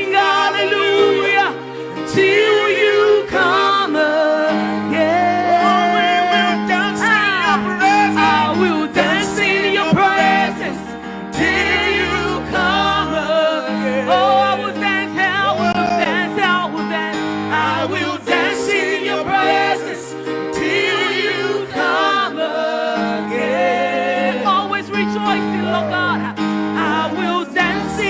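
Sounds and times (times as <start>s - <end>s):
singers holding vibrato notes: 0.0s - 28.0s
sustained band chords: 0.0s - 28.0s.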